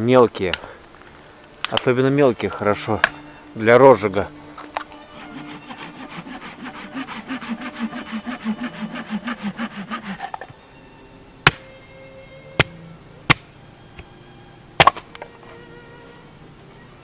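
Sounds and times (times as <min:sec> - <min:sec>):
small saw cutting branch: 0:00.5 - 0:10.6.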